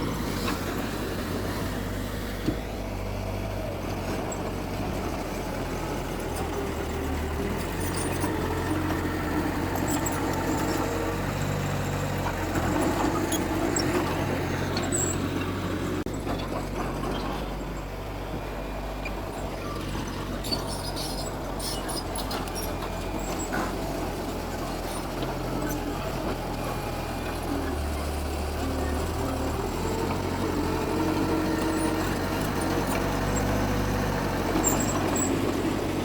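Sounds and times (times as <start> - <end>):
heavy diesel engine running: 0.0 - 36.0.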